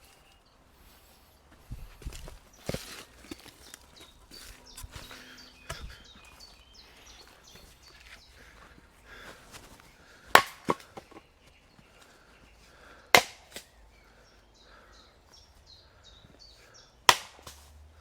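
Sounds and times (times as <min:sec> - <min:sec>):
axe chopping into a log: 0:10.3 - 0:11.2, 0:13.1 - 0:13.7, 0:17.1 - 0:17.7.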